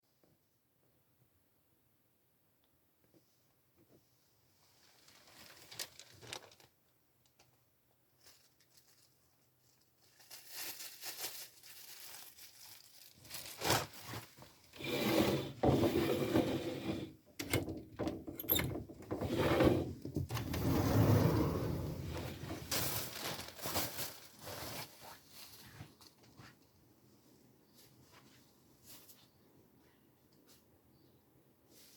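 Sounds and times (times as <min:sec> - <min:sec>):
rustling and rubbing: 0:19.1 - 0:26.6.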